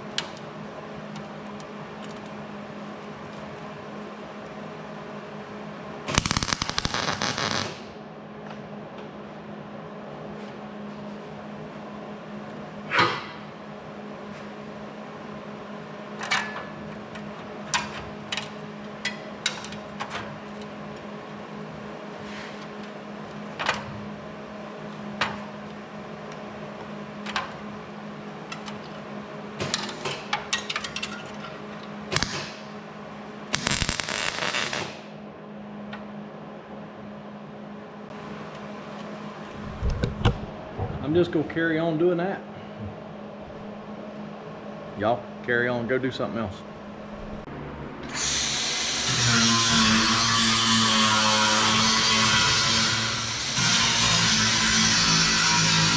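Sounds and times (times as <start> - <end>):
welding crackle: 6.1 - 8.0, 32.1 - 32.6, 33.5 - 35.1
steady low hum: 31.4 - 48.1.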